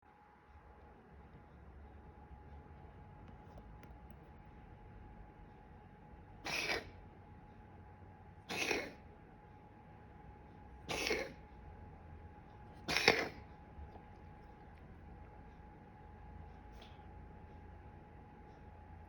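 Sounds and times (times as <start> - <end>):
cat coughing: 6.4 - 7.0, 8.4 - 9.0, 10.8 - 11.5, 12.8 - 13.6.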